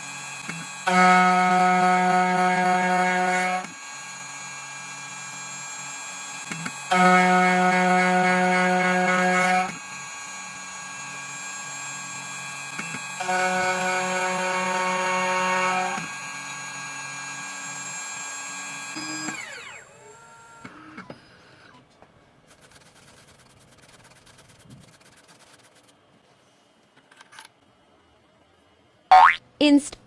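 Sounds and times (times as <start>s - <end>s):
cutting machine spindle whine: 0.0s - 21.8s.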